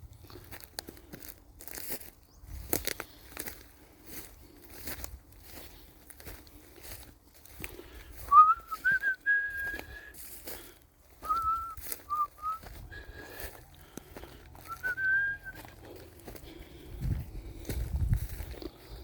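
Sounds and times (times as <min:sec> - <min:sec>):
footsteps crunching on forest floor: 0:00.0 - 0:19.0
person whistling a slow tune: 0:08.2 - 0:10.2, 0:11.2 - 0:12.7, 0:14.7 - 0:15.8.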